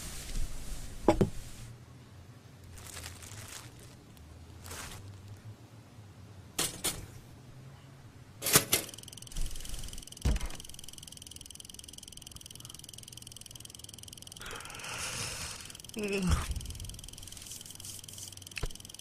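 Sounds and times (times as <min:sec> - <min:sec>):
sharp knocks: 0:10.2 - 0:10.6.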